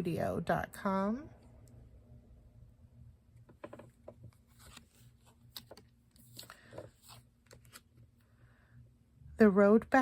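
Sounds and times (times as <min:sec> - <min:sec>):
playing cards clicking and sliding: 0:03.6 - 0:08.0.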